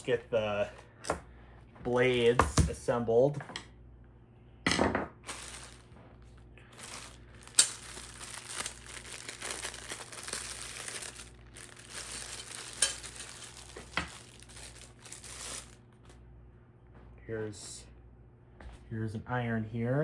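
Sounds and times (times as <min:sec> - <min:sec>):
packaging crinkling and rustling: 0:05.2 - 0:16.1.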